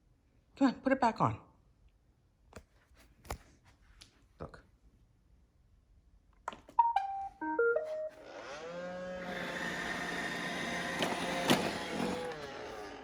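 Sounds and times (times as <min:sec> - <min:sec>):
vacuum motor and brushes whirring: 0:08.1 - 0:13.0.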